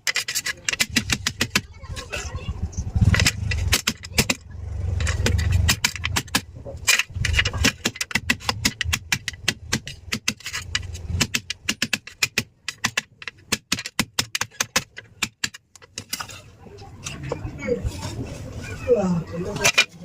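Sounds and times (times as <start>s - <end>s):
hard objects clicking: 0.0s - 17.4s, 19.5s - 20.0s
low rumble: 1.7s - 7.7s.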